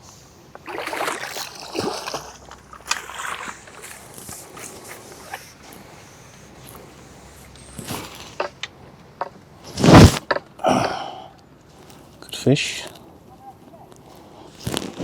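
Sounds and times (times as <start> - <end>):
water splashing and sloshing: 0.0 - 11.0.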